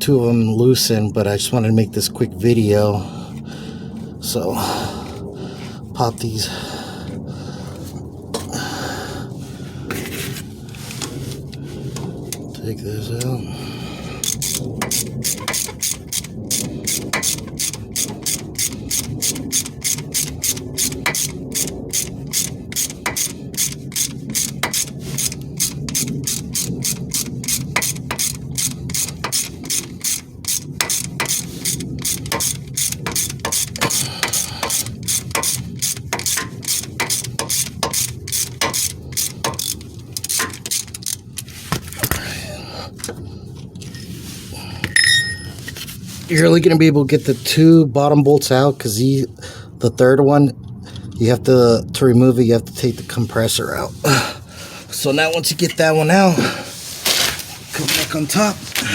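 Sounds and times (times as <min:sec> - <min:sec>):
ratchet wrench clicking: 0:14.2 - 0:41.2.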